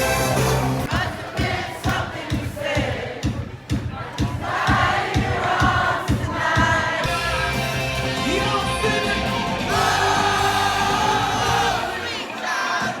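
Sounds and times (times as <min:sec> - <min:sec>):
thumping beat: 0:00.0 - 0:07.2
people singing along: 0:00.0 - 0:07.7, 0:08.5 - 0:13.0.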